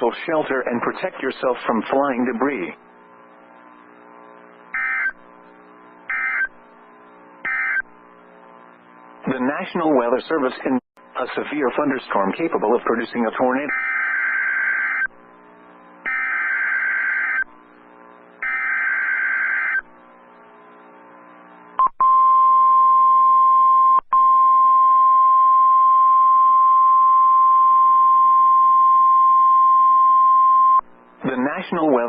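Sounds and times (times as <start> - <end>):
buzzing digital data bursts: 2.1 - 9.2, 13.5 - 21.8
warning alarm tone: 4.7 - 5.2, 6.1 - 6.6, 7.4 - 7.9, 13.7 - 15.1, 16.0 - 17.5, 18.4 - 19.8.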